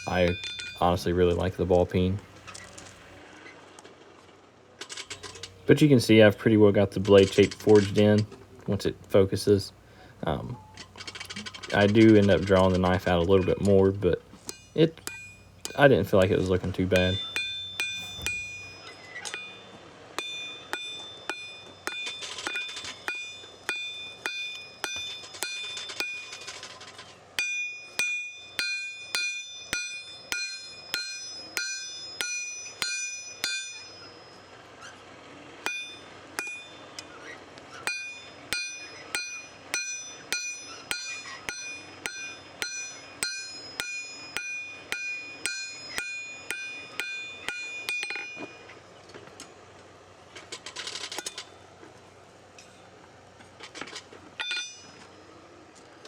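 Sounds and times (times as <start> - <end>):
hammer striking metal on anvil: 0.0 - 3.0, 12.5 - 26.4, 27.4 - 34.5, 35.6 - 48.7, 54.4 - 55.2.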